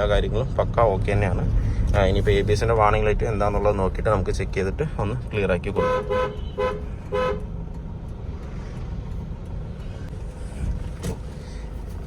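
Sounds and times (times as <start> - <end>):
vehicle running rumble: 0.0 - 12.0
car horn beep: 5.8 - 7.5.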